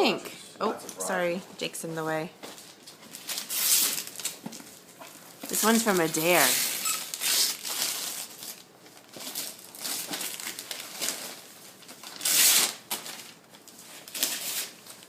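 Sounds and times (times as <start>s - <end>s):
wrapping paper tearing and crumpling: 2.6s - 4.9s, 5.5s - 15.0s.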